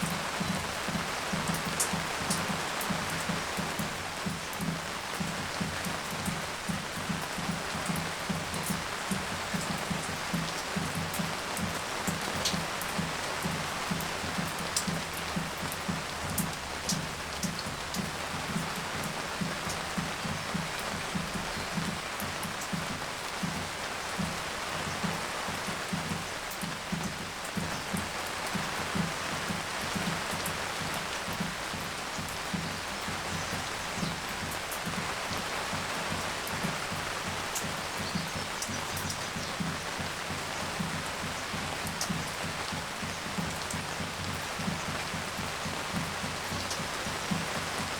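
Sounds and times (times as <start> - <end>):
rain hissing: 0.0 - 47.9
raindrops tapping on surfaces: 0.0 - 47.9
sharp raindrop ticks: 0.0 - 47.9.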